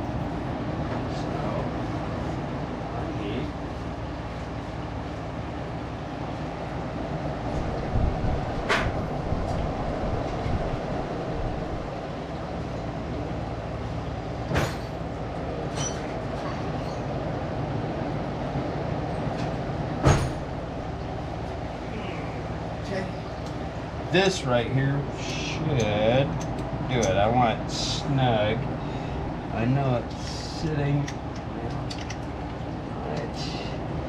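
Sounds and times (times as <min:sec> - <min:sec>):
steady mechanical hum: 0:00.0 - 0:34.0
hand tools clinking on metal: 0:25.7 - 0:27.4.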